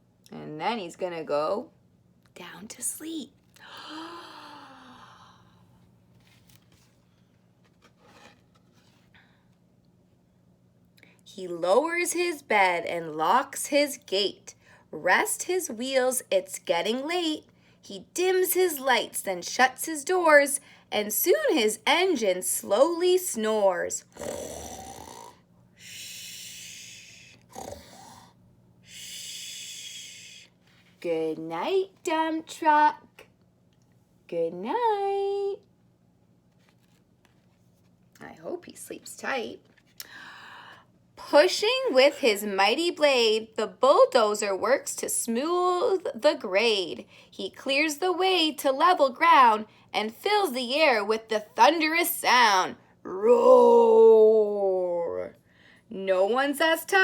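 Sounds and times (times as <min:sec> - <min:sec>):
faint steady hum: 0:00.0 - 0:57.0
breathy sigh: 0:03.6 - 0:05.7
faint soft rustles: 0:06.0 - 0:09.4, 0:36.4 - 0:38.1
woman imitating snoring: 0:24.1 - 0:25.4, 0:26.8 - 0:28.4.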